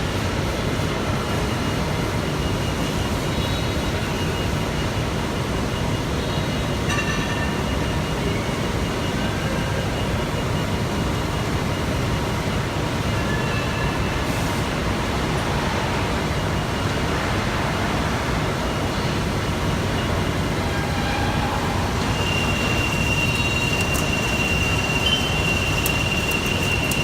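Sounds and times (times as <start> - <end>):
industrial machine rumble: 14.8 - 27.0.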